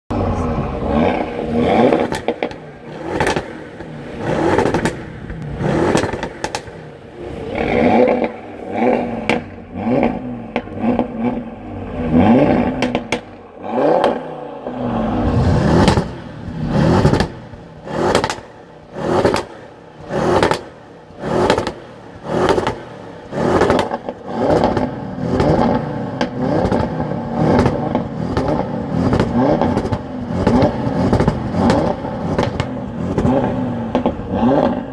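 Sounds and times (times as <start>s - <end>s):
car engine revving: 0.1s - 34.9s
exhaust pops and crackles: 1.8s - 6.8s, 9.2s - 11.2s, 12.5s - 13.4s, 15.8s - 16.2s, 17.0s - 18.5s, 20.2s - 34.9s.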